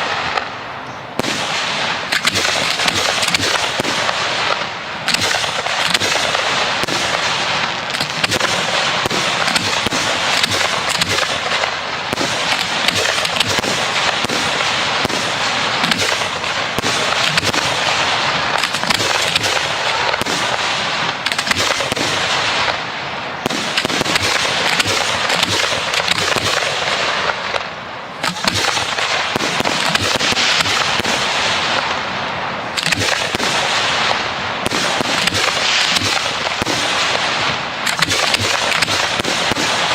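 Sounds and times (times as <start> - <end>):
fireworks bursting and crackling: 0.0 - 39.9.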